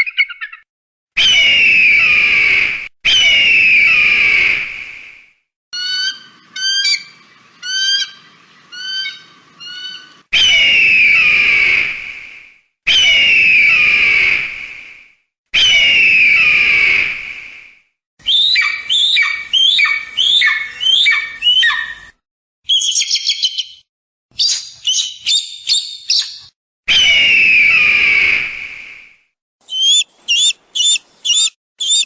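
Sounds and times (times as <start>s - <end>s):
eagle whistled calls: 5.8s - 11.8s, 18.2s - 22.1s, 22.7s - 23.8s, 24.4s - 28.5s, 29.6s - 32.0s
eagle screaming: 18.3s - 22.1s, 29.6s - 32.0s
eagle high chattering: 29.6s - 32.0s.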